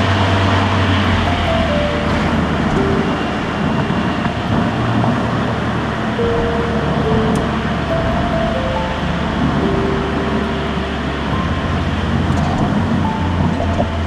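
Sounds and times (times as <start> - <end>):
tyre and road noise: 0.0 - 9.6.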